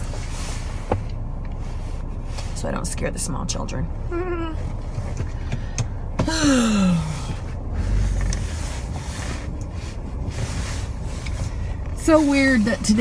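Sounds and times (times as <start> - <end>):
woman yawning: 6.3 - 7.1.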